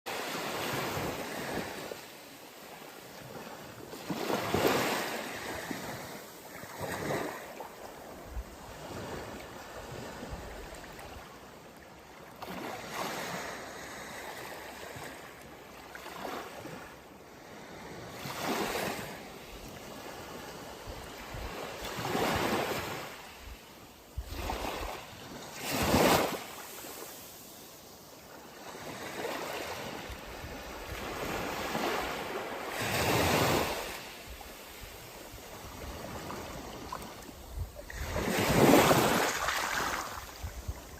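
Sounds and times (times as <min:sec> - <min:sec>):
waves washing in: 0:12.2 - 0:40.9.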